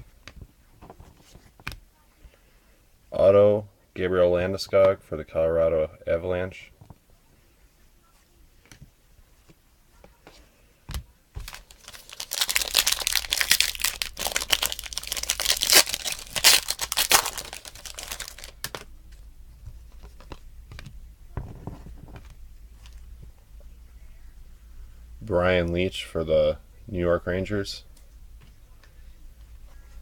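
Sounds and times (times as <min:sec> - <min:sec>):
card pack wrapper tearing and crinkling: 0:11.4 - 0:18.9.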